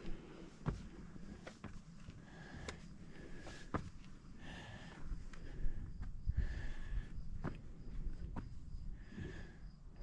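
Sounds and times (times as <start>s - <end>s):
footsteps: 0.0s - 2.2s
person breathing: 0.0s - 10.0s.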